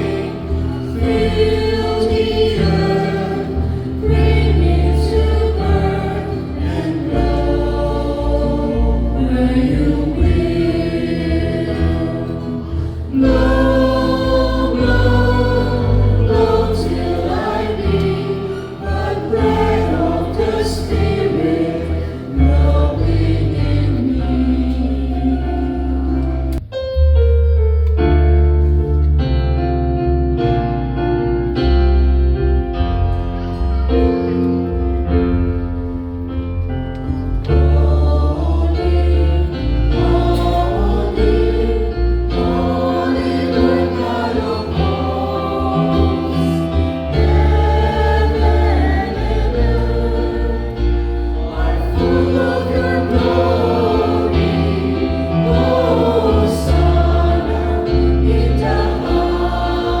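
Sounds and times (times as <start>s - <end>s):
choir singing a hymn: 0.0s - 26.6s, 33.2s - 60.0s
keyboard accompaniment: 0.0s - 60.0s.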